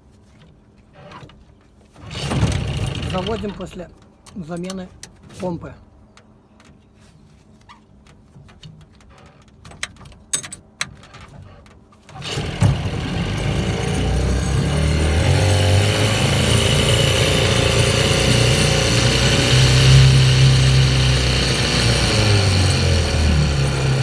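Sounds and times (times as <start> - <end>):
outboard motor running: 2.1 - 3.8, 12.1 - 24.0.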